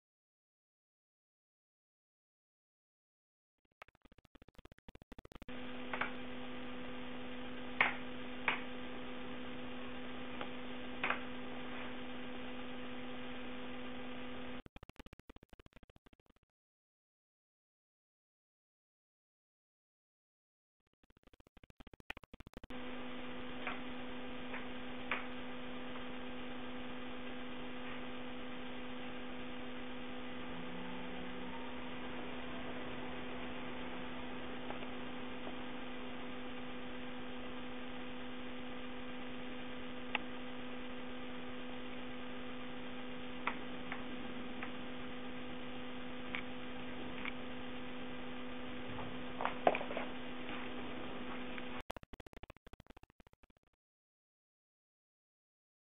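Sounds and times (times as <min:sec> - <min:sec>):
steady electrical hum: 0:05.2 - 0:14.6, 0:22.6 - 0:51.8.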